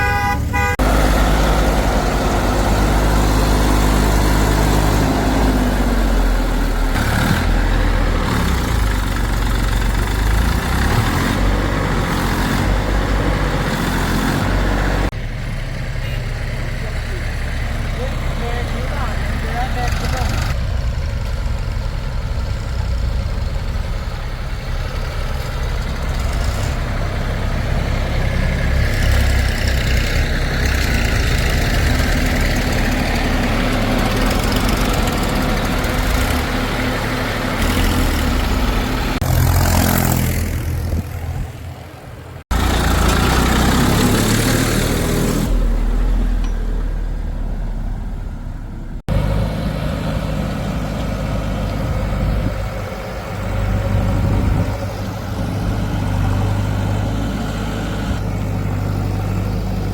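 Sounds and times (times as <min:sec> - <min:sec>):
heavy machinery diesel engine: 0:00.0 - 0:59.9.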